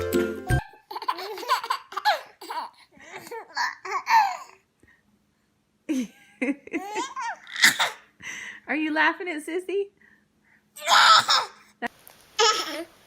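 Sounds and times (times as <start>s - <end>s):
baby laughing: 0.6s - 4.6s, 6.7s - 8.1s, 10.8s - 11.6s, 12.4s - 12.9s.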